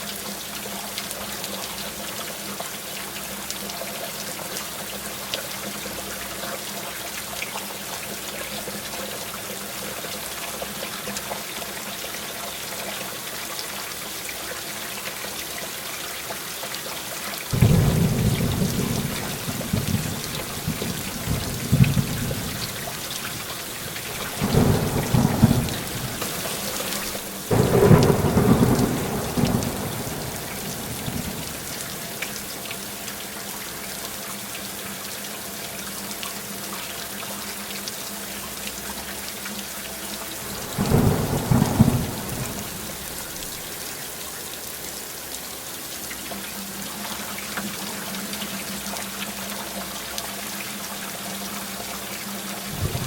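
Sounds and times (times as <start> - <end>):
thunder rumbling: 17.5 - 32.0, 40.4 - 43.6, 52.7 - 53.0
heavy rain hissing: 17.5 - 33.0, 40.2 - 45.8, 52.6 - 53.0.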